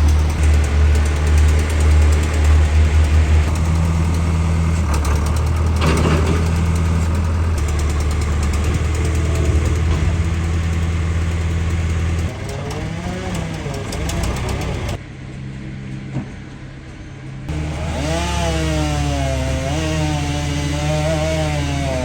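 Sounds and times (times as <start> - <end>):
heavy equipment engine idling: 0.0 - 15.2.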